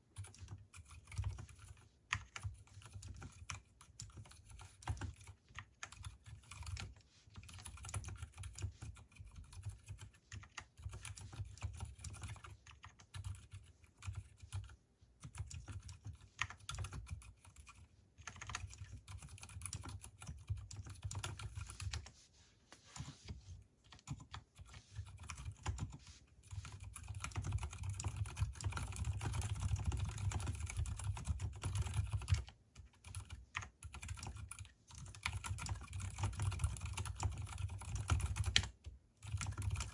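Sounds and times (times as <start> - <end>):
mechanical keyboard typing: 0.0 - 22.1, 23.8 - 39.9.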